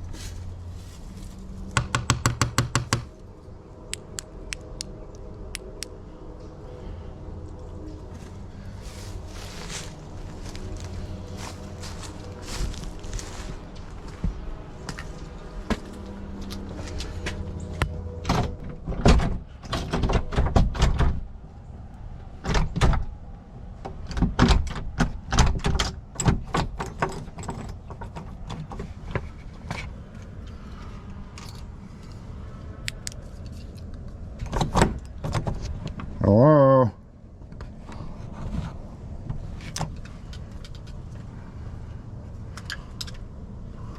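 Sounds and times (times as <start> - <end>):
door knocks clicks and rattles: 24.1 - 28.8.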